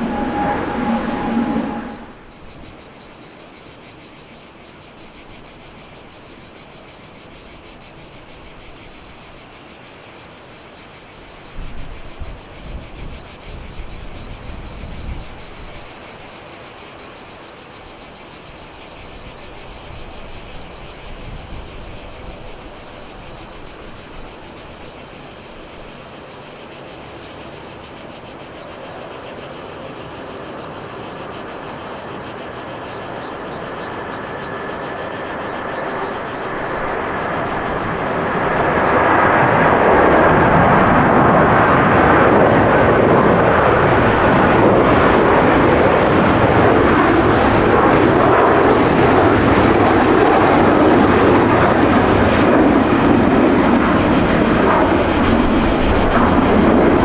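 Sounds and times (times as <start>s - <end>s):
low rumble: 0.0s - 2.6s
shrill insect chorus: 0.0s - 16.6s, 17.4s - 57.0s.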